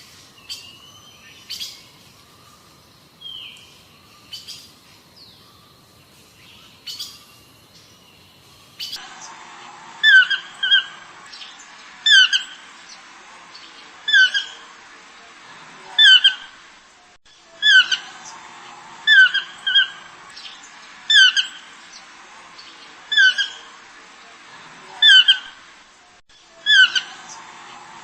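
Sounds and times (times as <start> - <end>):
bird squawking: 10.0 - 11.0, 17.6 - 18.1, 19.1 - 20.0, 26.6 - 27.3.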